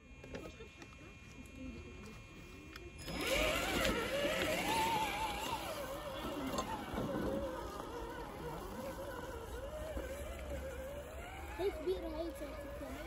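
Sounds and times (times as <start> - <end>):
rc car motor whine: 0.0 - 13.0.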